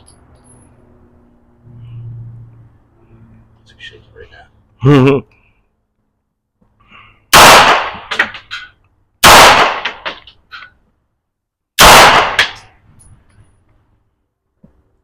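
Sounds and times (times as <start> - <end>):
gunshots with echoes: 7.4 - 8.1, 9.2 - 10.0, 11.8 - 12.6.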